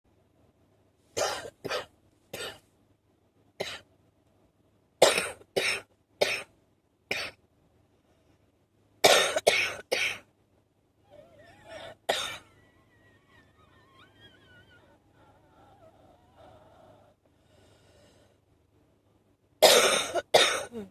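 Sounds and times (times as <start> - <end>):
person coughing: 11.8 - 12.4, 19.6 - 20.9.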